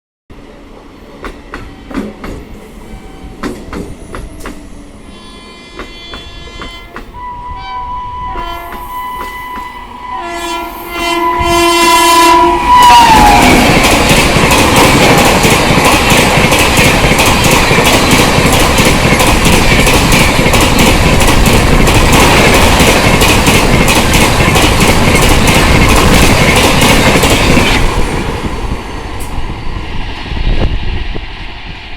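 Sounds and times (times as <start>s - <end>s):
train horn: 5.0s - 13.9s
train coaches rushing past: 8.1s - 31.9s
wheels clacking over rail joints: 13.2s - 28.3s.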